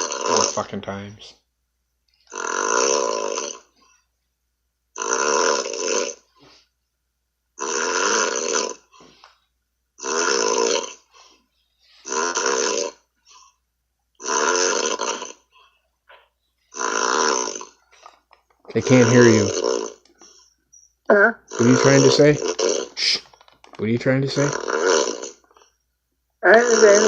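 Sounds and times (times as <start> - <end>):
man snoring: 0.0 - 0.7, 2.3 - 3.8, 5.0 - 6.3, 7.6 - 9.1, 10.0 - 11.3, 12.0 - 13.4, 14.2 - 15.5, 16.7 - 17.8, 18.8 - 20.4, 21.5 - 23.2, 24.3 - 25.4, 26.4 - 27.0.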